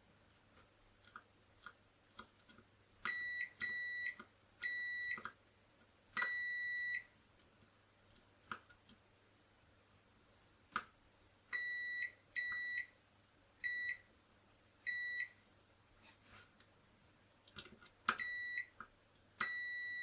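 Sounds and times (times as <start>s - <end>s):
multimeter continuity beeps: 3.1s - 5.2s, 6.2s - 7.1s, 11.6s - 12.9s, 13.6s - 14.0s, 14.9s - 15.4s, 18.2s - 18.7s, 19.4s - 20.0s.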